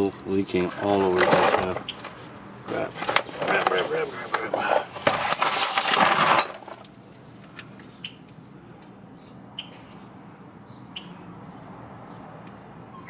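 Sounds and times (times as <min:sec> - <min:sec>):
faint bird chirps: 0:09.0 - 0:10.1.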